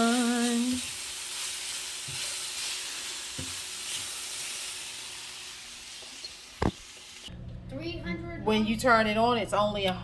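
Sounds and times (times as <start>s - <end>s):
chicken sizzling in a pan: 0.0s - 7.3s.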